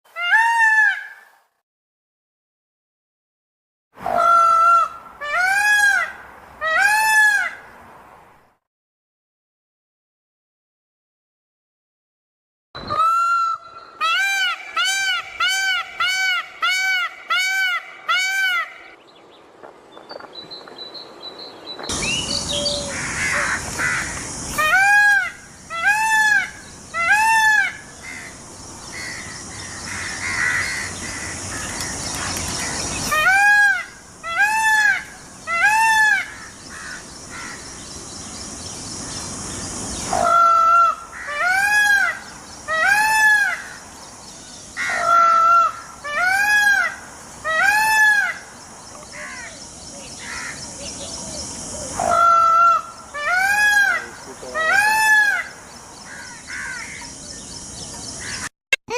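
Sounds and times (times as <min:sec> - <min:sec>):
peacock calling: 0:00.1 - 0:01.4, 0:04.0 - 0:07.7, 0:12.8 - 0:19.0, 0:21.9 - 0:58.5
steady hiss: 0:21.9 - 0:44.9, 0:48.3 - 0:54.7.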